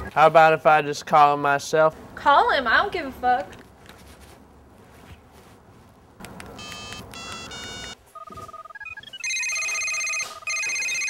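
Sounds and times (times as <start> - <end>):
electronic telephone ringing: 6.6 - 11.0
phone keypad beeps: 6.6 - 11.0.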